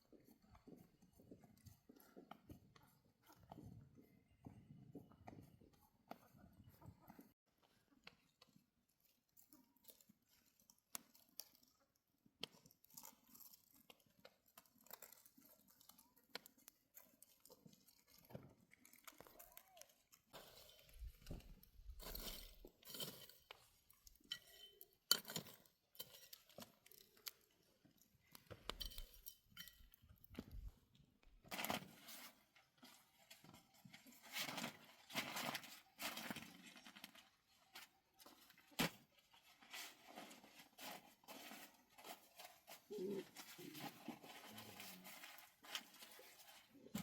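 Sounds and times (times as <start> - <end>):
handling clicks and clinks: 17.2 - 30.5
scrapes and rustles: 31.4 - 47.0.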